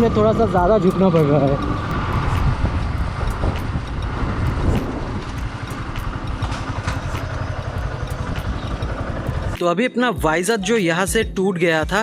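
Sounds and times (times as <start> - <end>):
motorcycle engine running: 0.0 - 9.6.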